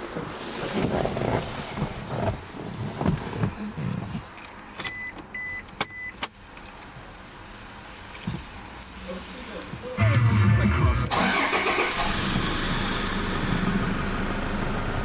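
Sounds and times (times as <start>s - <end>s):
knocks and rustling in vehicle: 0.6s - 6.4s, 8.2s - 8.6s.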